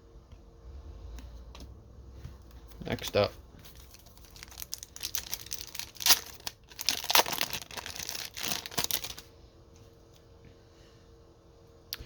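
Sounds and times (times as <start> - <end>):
wrapper being torn open: 3.8 - 9.3.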